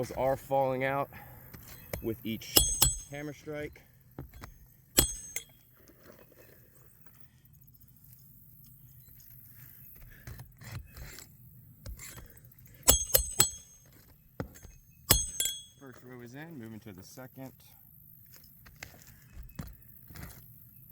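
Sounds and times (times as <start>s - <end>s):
hatchet striking nails: 1.5s - 3.3s, 4.2s - 5.6s, 11.8s - 15.8s.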